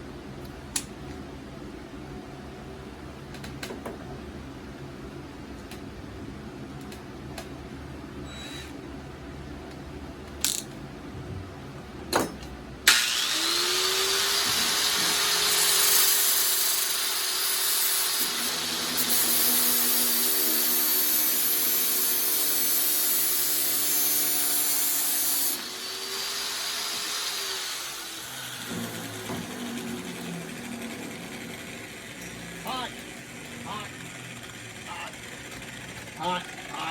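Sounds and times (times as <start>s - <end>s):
power tool grinding steel: 12.9s - 36.9s.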